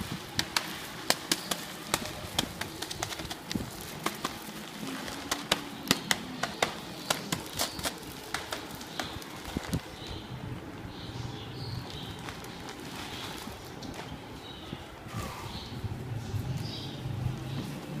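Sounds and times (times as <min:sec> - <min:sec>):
items clicking and knocking together: 0:00.3 - 0:09.9.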